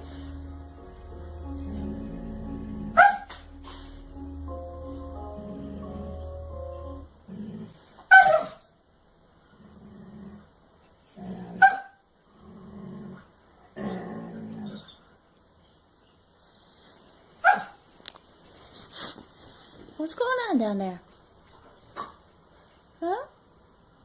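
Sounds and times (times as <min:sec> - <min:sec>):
pet growling: 0:07.2 - 0:07.9, 0:09.5 - 0:10.5, 0:11.1 - 0:15.0.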